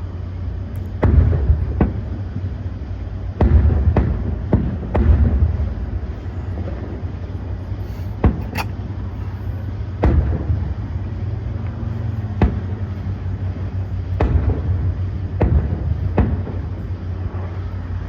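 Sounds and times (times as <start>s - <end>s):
low rumble: 0.0s - 18.0s
distant fireworks bangs: 0.9s - 9.1s, 9.7s - 18.0s.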